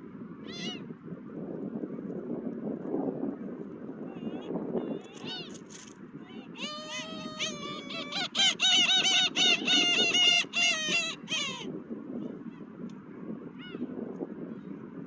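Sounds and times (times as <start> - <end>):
wind: 0.0 - 15.0
gulls calling: 4.2 - 5.7, 6.3 - 11.7.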